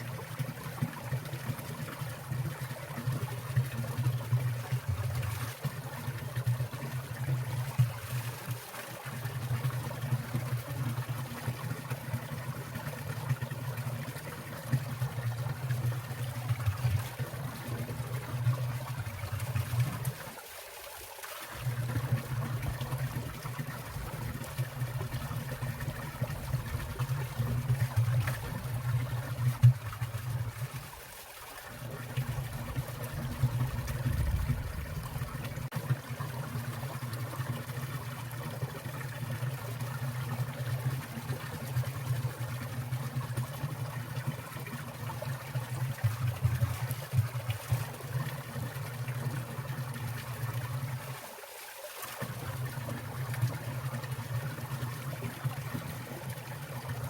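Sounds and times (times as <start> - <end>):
stream water trickling: 0.0 - 57.0
low water rumble: 9.1 - 20.4, 21.5 - 51.1.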